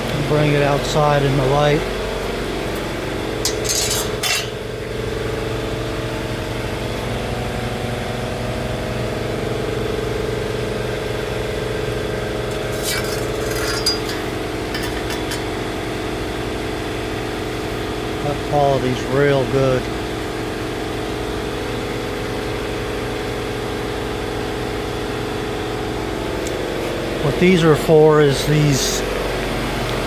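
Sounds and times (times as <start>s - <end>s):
machine humming: 0.0s - 30.0s
steel part clinking and scraping: 3.4s - 4.6s, 12.5s - 15.5s.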